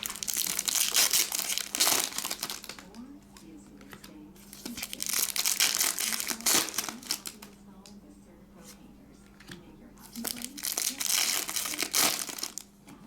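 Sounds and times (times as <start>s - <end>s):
foil wrappers crinkling and tearing: 0.0s - 3.0s, 4.5s - 7.6s, 10.0s - 12.7s.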